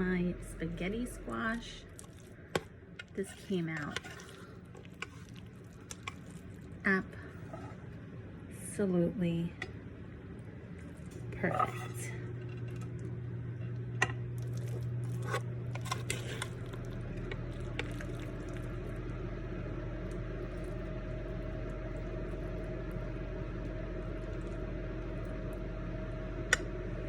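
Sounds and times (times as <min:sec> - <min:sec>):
low appliance hum: 0:00.0 - 0:27.0
squash being scooped: 0:01.7 - 0:07.9, 0:14.4 - 0:19.0.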